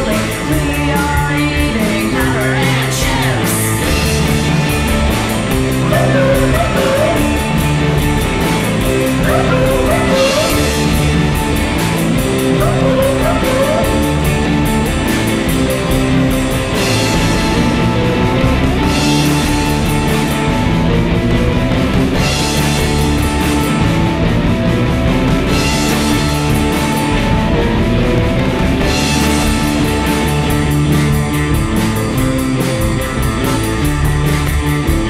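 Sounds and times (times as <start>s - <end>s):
person singing: 0.0s - 4.0s, 5.7s - 7.5s, 9.2s - 11.0s, 12.5s - 14.5s
drums: 0.0s - 35.0s
electric guitar: 0.0s - 35.0s
rock music: 0.0s - 35.0s.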